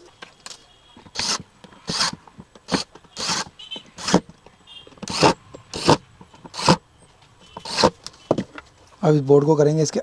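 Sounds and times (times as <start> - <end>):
screwdriver scraping twists: 1.0 - 4.4, 5.0 - 6.8, 7.4 - 8.2.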